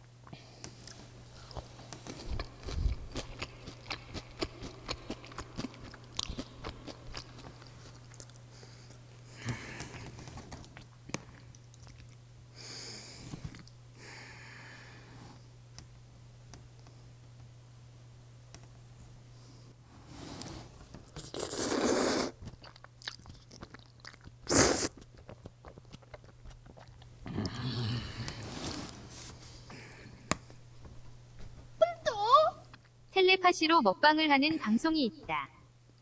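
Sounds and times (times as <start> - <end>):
crunchy chewing: 0.6 - 9.1, 21.1 - 28.6
soft hissing mouth sounds: 21.2 - 22.4, 24.4 - 25.1.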